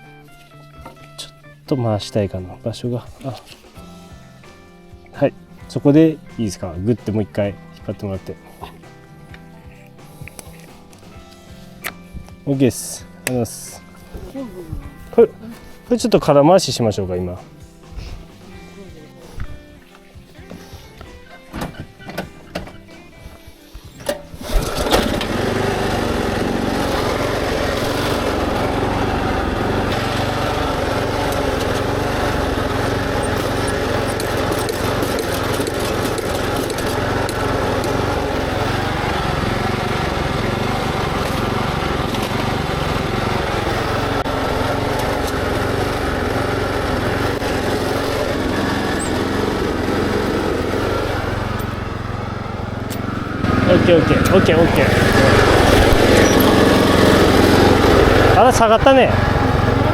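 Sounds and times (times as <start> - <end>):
rice transplanter engine running: 24.0 - 59.9.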